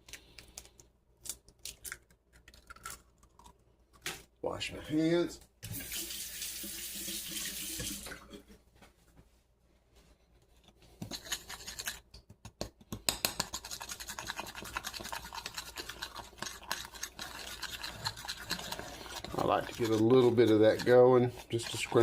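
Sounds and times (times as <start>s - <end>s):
kitchen tap running: 5.6s - 8.3s
egg beaten in mixing bowl: 11.0s - 22.0s.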